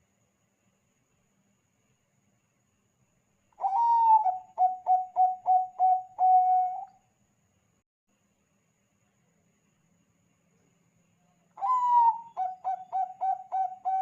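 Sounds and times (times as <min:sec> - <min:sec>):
dove cooing: 0:03.6 - 0:06.9, 0:11.6 - 0:14.0.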